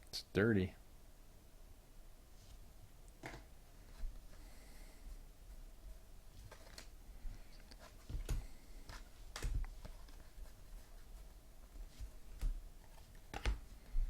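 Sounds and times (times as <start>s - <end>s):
trading cards tapping and rustling: 7.7s - 10.9s, 11.8s - 14.0s.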